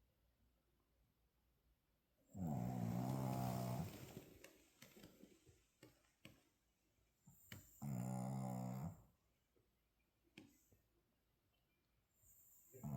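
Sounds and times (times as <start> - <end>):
droning snores: 2.4 - 4.2, 7.7 - 9.1, 12.4 - 12.9.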